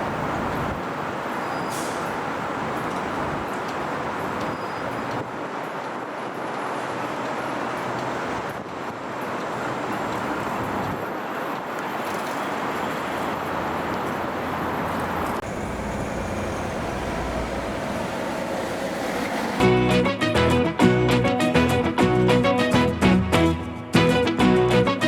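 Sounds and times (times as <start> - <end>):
road traffic passing: 0.0 - 20.2
deep engine rumble: 15.1 - 20.1.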